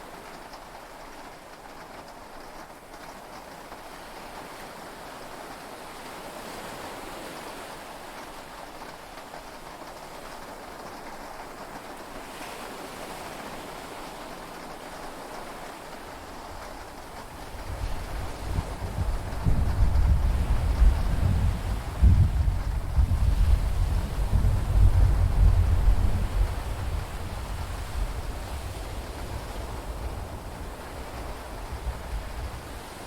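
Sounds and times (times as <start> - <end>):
heavy rain: 0.0 - 33.0
sea waves: 12.0 - 33.0
low thunder rumble: 17.6 - 32.7.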